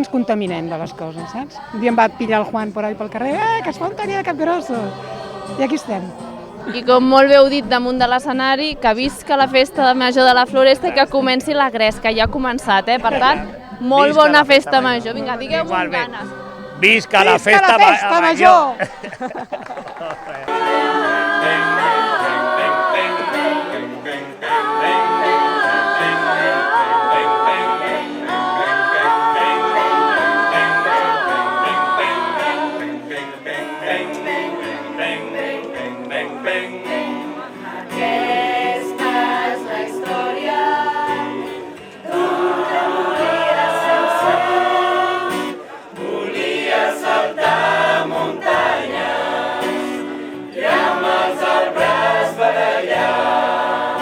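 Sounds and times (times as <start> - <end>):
choir singing: 0.0 - 54.0.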